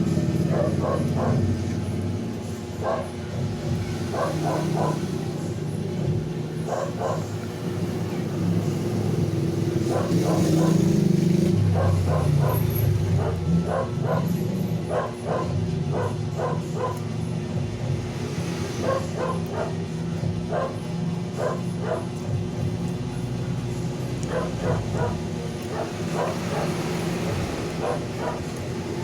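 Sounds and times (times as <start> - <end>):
low engine-like rumble: 0.0 - 29.0
dog barking: 0.2 - 1.7, 2.8 - 3.2, 4.0 - 5.3, 6.6 - 7.4, 9.6 - 17.2, 18.8 - 22.2, 24.2 - 28.6.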